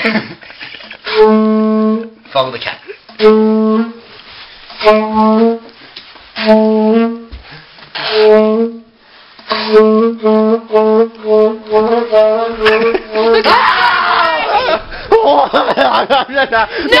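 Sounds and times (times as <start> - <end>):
saxophone-like wind instrument: 1.0 - 2.2, 3.1 - 5.8, 6.4 - 13.4.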